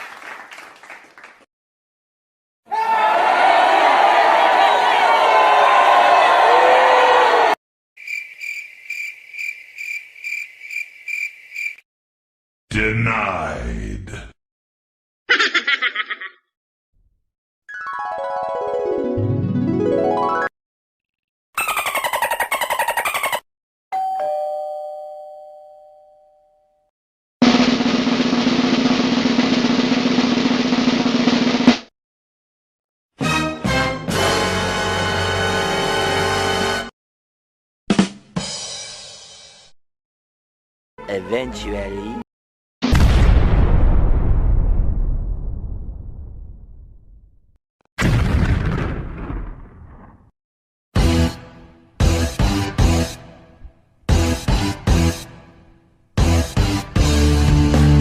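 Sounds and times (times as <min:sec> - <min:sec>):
cricket chirping: 0:08.0 - 0:11.8
two-tone doorbell chime: 0:24.0 - 0:26.9
snare drum roll: 0:27.4 - 0:31.9.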